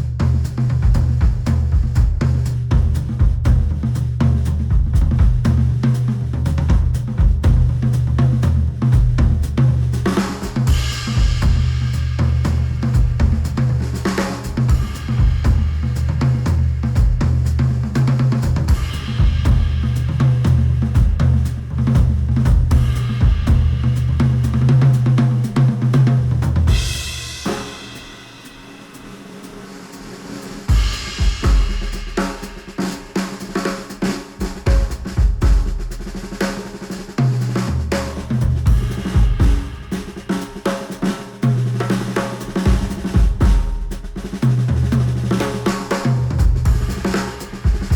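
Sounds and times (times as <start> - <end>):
heavy bass line: 0.0 - 9.8, 10.7 - 27.4, 37.6 - 40.1, 46.4 - 47.9
drum kit: 0.0 - 47.9
high cymbal wash: 10.3 - 16.3, 26.7 - 35.2, 46.7 - 47.9.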